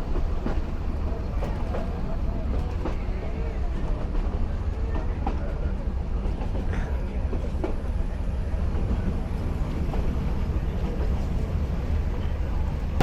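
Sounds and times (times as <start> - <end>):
train rumbling on track: 0.0 - 13.0.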